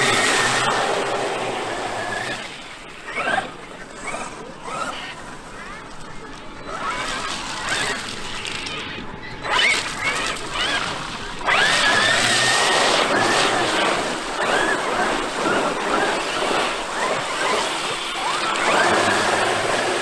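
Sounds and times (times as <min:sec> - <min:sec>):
electric motor whining: 0:00.0 - 0:05.2, 0:09.4 - 0:20.0
steady rushing noise: 0:00.0 - 0:08.4, 0:09.8 - 0:20.0.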